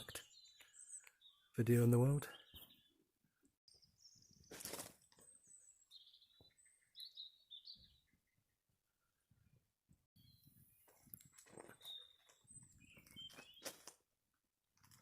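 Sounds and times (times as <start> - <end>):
high bird chirps: 5.2 - 8.2, 11.7 - 13.8.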